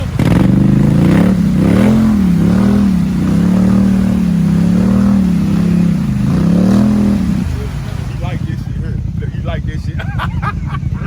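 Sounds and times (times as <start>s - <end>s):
atv engine revving: 0.0s - 11.0s.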